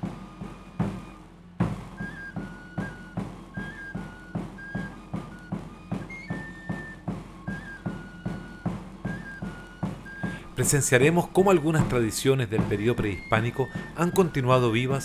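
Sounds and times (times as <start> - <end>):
flute melody: 0.0 - 15.0
steady drum beat: 9.9 - 15.0.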